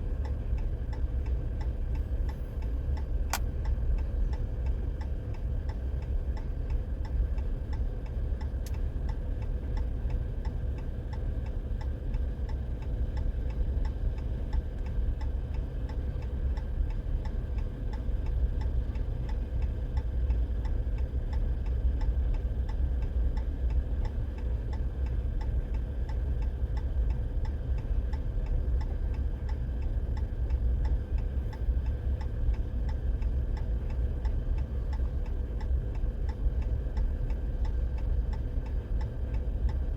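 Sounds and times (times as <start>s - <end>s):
low steady rumble: 0.0s - 39.9s
flasher relay ticking: 0.1s - 39.9s.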